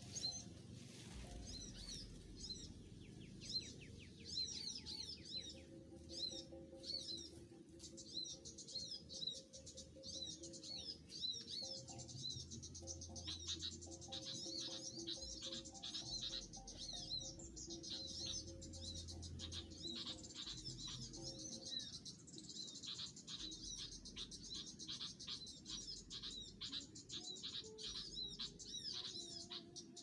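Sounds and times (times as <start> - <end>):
small songbirds chirping: 0.0 - 30.0.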